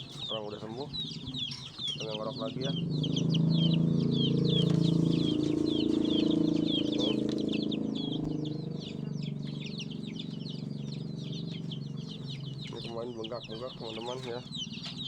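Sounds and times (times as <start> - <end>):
young chickens peeping and chirping: 0.0 - 15.0
low steady drone: 2.5 - 13.0.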